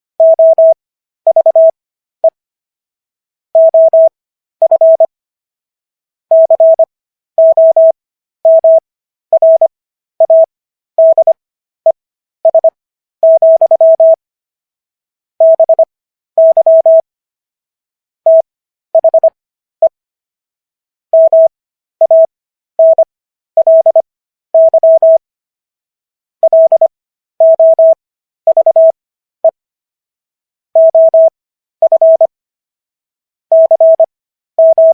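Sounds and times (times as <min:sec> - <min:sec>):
morse code tone: 0:00.2 - 0:01.8, 0:04.7 - 0:05.1, 0:06.3 - 0:08.8, 0:09.4 - 0:09.7, 0:10.3 - 0:11.4, 0:12.5 - 0:14.2, 0:15.4 - 0:17.0, 0:18.3 - 0:20.0, 0:21.2 - 0:24.0, 0:24.6 - 0:25.2, 0:26.4 - 0:29.0, 0:30.8 - 0:32.3, 0:33.5 - 0:34.9.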